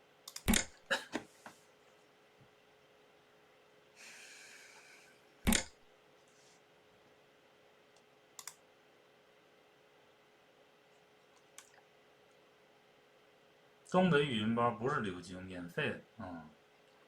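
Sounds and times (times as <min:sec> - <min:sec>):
mouse clicks: 0:00.3 - 0:00.7, 0:08.0 - 0:08.6.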